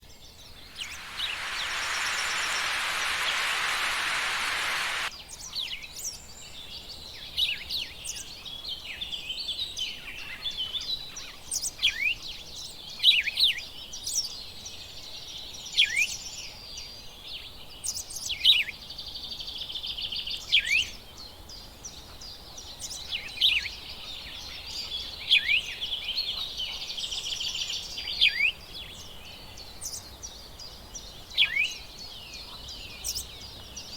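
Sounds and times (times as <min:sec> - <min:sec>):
loud steady hiss: 0:00.6 - 0:05.1.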